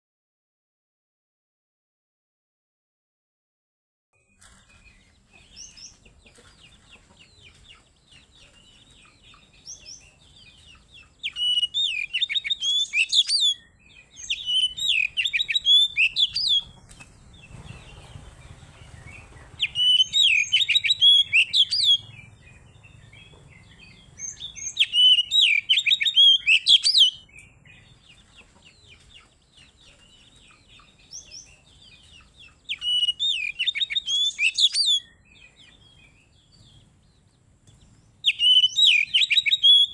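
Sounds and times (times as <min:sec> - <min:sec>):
soft bird twittering: 0:04.2 - 0:39.9
bird song high sweeping notes: 0:18.8 - 0:27.2.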